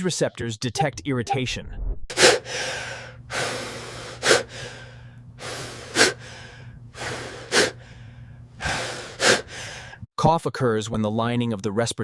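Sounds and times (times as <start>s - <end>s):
person coughing: 2.1s - 2.6s, 5.8s - 6.3s
noisy breath in: 2.1s - 10.1s.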